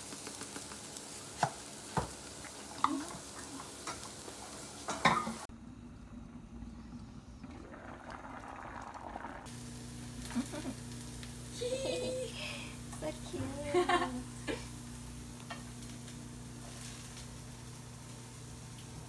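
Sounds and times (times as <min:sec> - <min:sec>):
food sizzling in a frying pan: 0:00.0 - 0:05.5, 0:07.7 - 0:19.0
dull hiss: 0:06.5 - 0:19.0.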